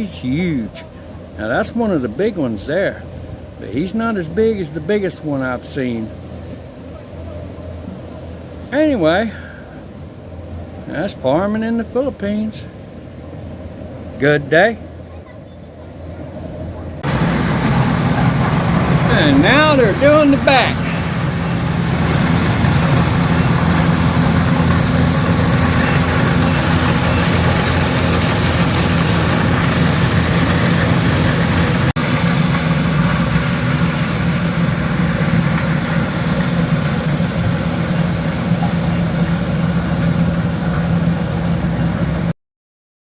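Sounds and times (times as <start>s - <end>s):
harvesting machine engine humming: 17.0s - 42.3s.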